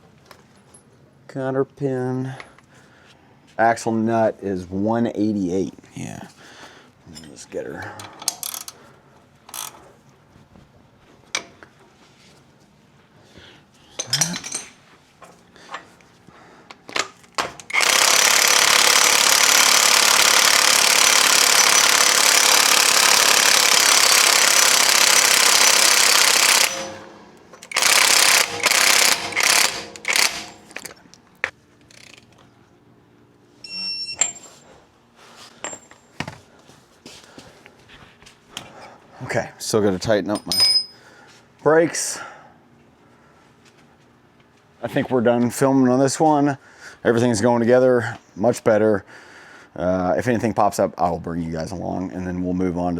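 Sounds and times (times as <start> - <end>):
impact wrench hammering: 17.4 - 31.0.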